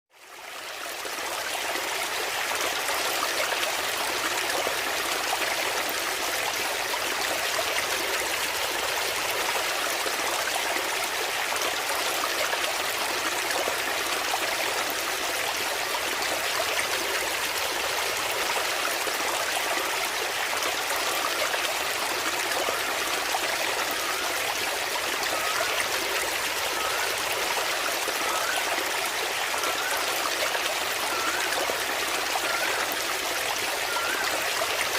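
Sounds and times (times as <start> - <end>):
small waterfall pouring into pond: 0.1 - 34.9.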